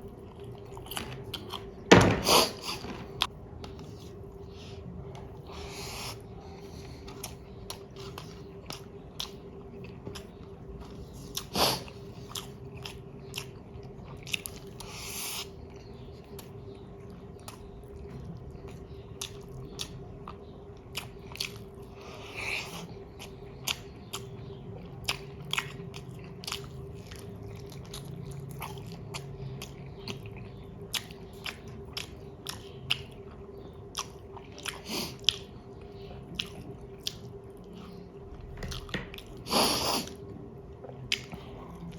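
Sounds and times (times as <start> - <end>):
faint steady hum: 0.0 - 41.9
person chewing food: 0.0 - 41.9.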